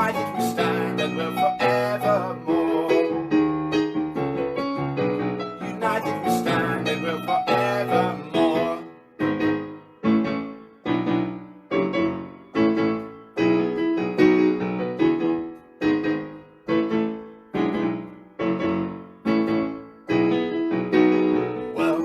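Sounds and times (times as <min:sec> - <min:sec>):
person singing: 0:00.0 - 0:03.4, 0:05.6 - 0:09.0, 0:21.7 - 0:22.0
piano chords: 0:00.0 - 0:22.0.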